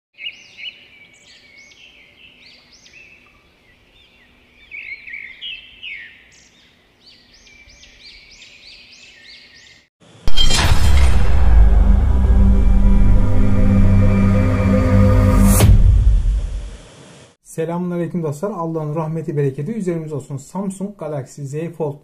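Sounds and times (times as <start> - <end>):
bird chirping: 0.2 - 9.9
loud burst of music: 10.3 - 17.2.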